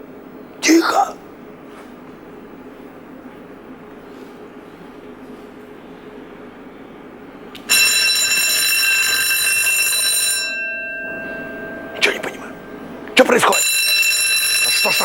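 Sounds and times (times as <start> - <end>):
alarm bell ringing: 7.7 - 15.0.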